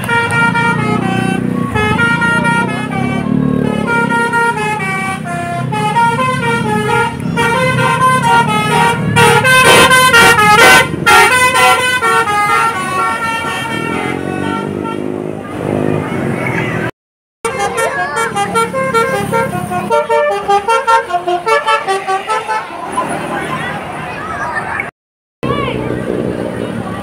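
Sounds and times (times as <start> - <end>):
bus horn playing a tune: 0.0 - 15.2, 17.4 - 22.9
bus engine running: 0.0 - 16.9, 17.5 - 27.0.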